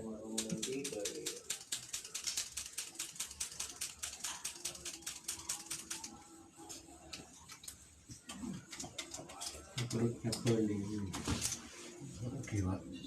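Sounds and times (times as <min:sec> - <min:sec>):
rapid even clicking: 0:00.3 - 0:06.1.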